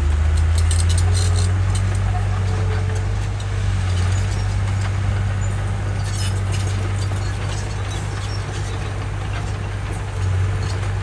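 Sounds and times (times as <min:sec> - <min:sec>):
bulldozer diesel engine droning: 0:00.0 - 0:11.0
metallic clinks and rattles: 0:00.4 - 0:11.0.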